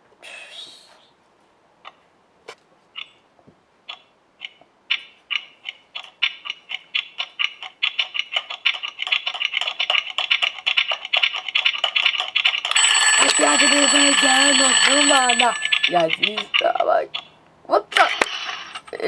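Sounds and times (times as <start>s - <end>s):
alarm clock ticking: 12.7s - 16.7s.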